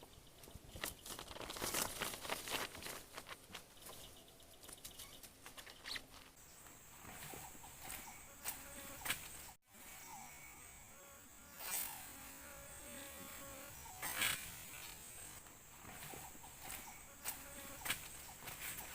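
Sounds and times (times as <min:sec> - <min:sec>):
crackling and rustling: 0:00.0 - 0:09.4
high-pitched insect drone: 0:09.8 - 0:17.9.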